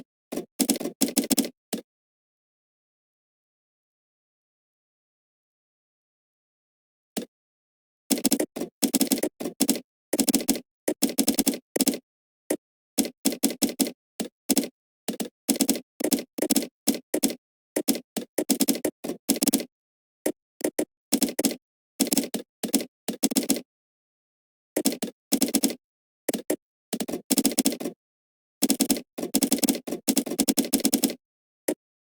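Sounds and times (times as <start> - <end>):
typing on computer keyboard: 0.3 - 1.5, 8.1 - 23.7, 24.8 - 28.0, 28.6 - 31.8.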